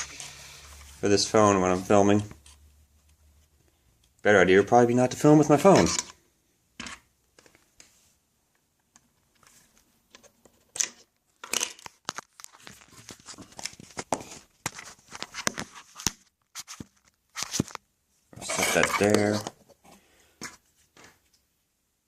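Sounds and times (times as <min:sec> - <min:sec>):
phone handling rubbing and rustling: 0:09.0 - 0:21.2.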